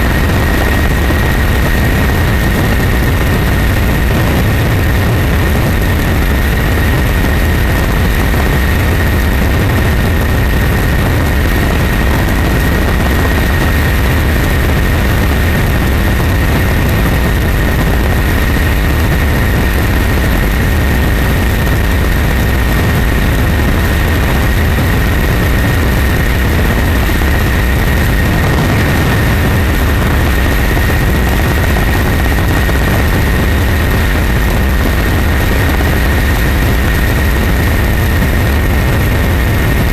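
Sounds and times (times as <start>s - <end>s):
engine drone with high whine: 0.0s - 39.9s.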